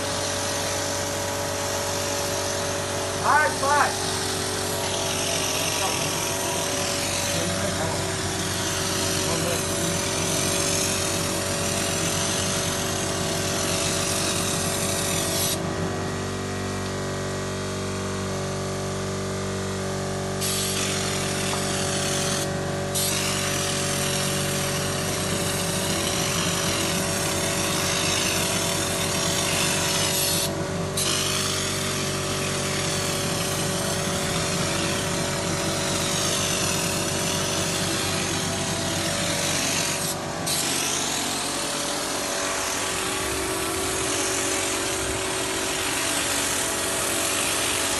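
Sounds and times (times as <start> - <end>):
motor hum: 0.0 - 47.9
air spraying hiss: 20.4 - 27.0, 27.6 - 45.0.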